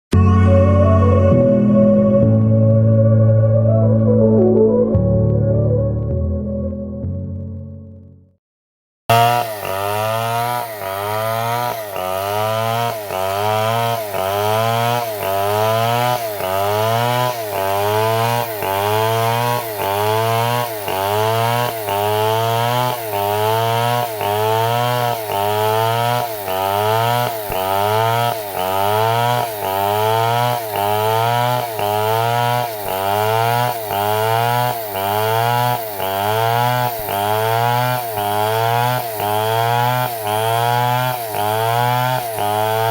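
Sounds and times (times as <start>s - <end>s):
chainsaw cutting wood: 9.1s - 42.9s.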